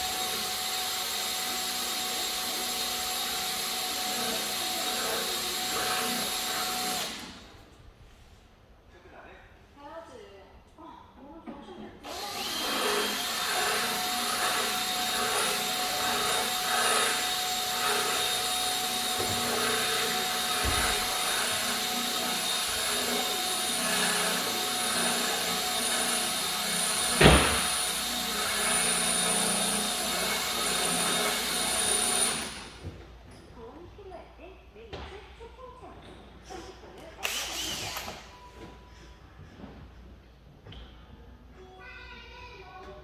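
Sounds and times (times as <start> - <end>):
machine whining: 12.0 - 32.8.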